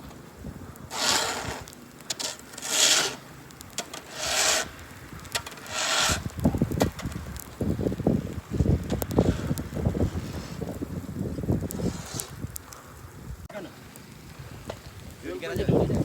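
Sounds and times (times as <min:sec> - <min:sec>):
rasping scrapes: 0:00.9 - 0:04.7, 0:05.4 - 0:06.3, 0:11.7 - 0:12.4.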